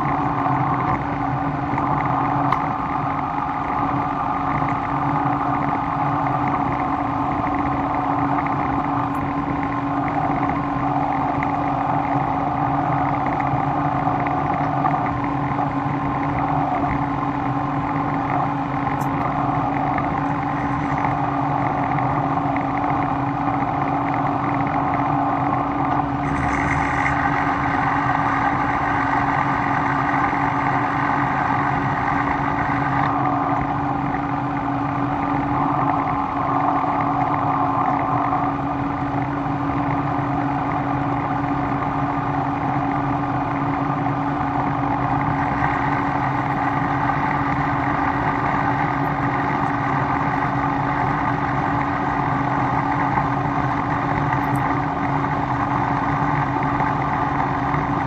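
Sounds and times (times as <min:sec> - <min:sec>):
shop machine motor humming: 0:18.5 - 0:35.5.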